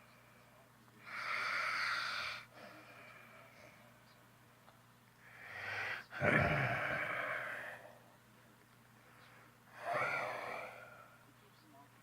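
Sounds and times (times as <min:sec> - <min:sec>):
soft breath: 0:00.0 - 0:04.2, 0:08.9 - 0:11.3.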